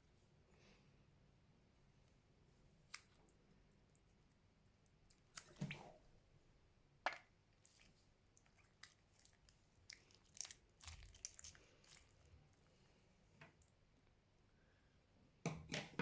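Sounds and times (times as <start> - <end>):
slime popping and crackling: 9.4 - 12.1.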